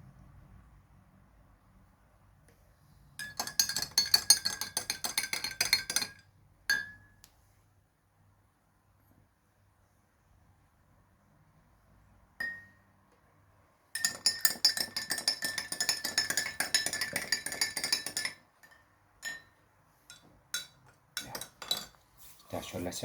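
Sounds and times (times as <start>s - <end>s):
metal spoon clinking in glass: 3.2s - 7.1s, 12.4s - 12.8s, 14.0s - 22.0s.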